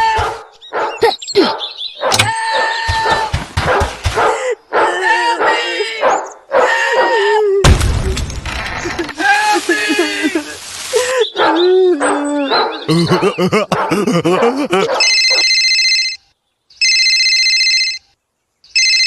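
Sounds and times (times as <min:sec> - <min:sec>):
dog-like whimpering and yelping: 0:02.0 - 0:07.6, 0:11.4 - 0:15.6.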